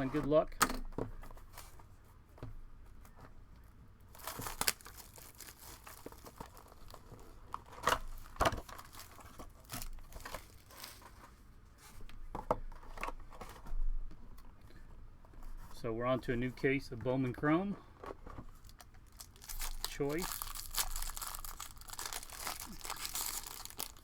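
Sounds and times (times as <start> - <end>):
wrapping crinkling and tearing: 4.1 - 11.3, 18.5 - 24.0
sharp snaps and crackles: 4.2 - 11.0, 18.6 - 24.0.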